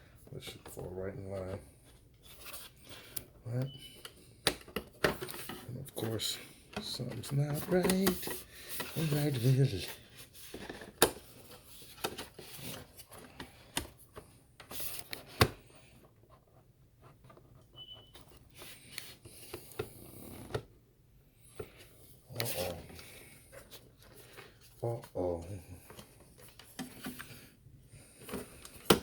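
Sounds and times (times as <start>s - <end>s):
hardware clicks and taps: 3.1s - 6.1s.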